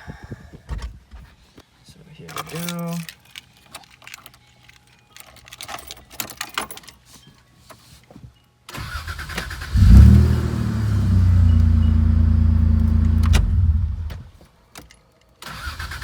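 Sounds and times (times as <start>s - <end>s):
light clicks and rattles: 2.2s - 8.2s
starter cranking engine: 8.8s - 14.3s
engine revving: 9.0s - 14.2s.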